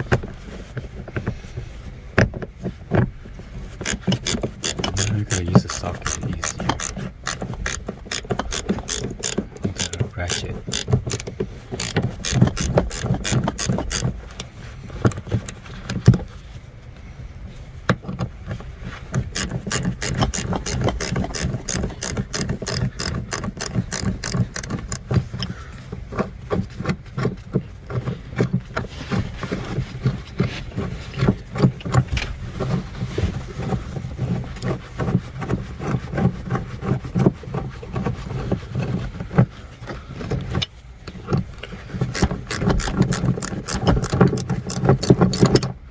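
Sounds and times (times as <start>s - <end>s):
steady low hum: 0.0s - 26.8s
socket ratchet clicking: 3.8s - 14.4s, 19.3s - 25.0s, 42.1s - 45.6s.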